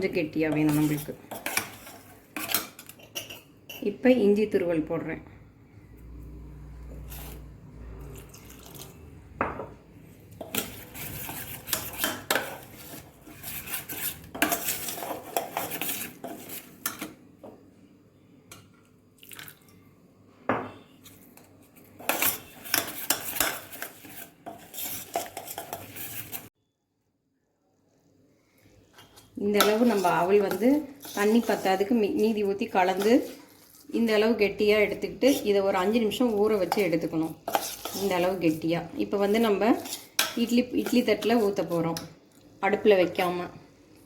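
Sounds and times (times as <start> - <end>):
spoon stirring batter in a bowl: 0.0 - 4.0, 6.8 - 17.5, 20.7 - 26.5, 28.8 - 44.0.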